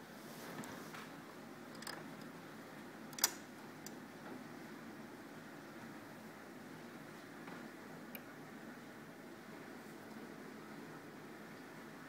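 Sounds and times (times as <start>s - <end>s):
faint room hiss: 0.0s - 12.0s.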